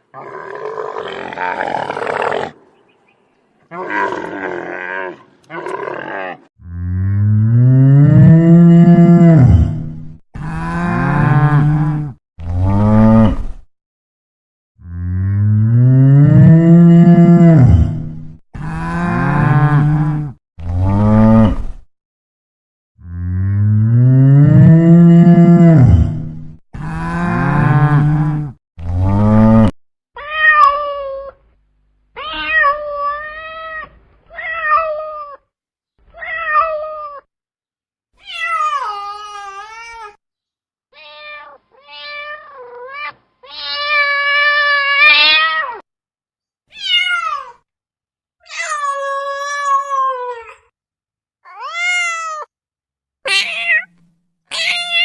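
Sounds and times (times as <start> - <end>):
cow mooing: 3.7 - 9.8, 23.0 - 26.1, 26.8 - 29.7
cat meowing: 32.2 - 35.4, 36.1 - 37.3, 41.0 - 45.8, 46.7 - 47.6, 48.5 - 50.5, 51.5 - 52.5, 53.3 - 55.0.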